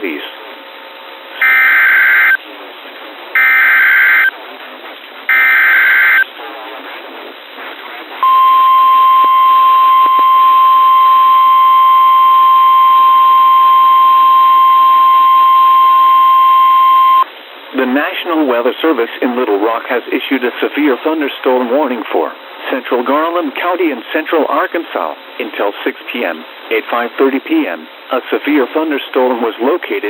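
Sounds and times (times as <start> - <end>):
steady warning alarm tone: 1.4 - 2.4, 3.4 - 4.3, 5.3 - 6.3, 8.2 - 17.3.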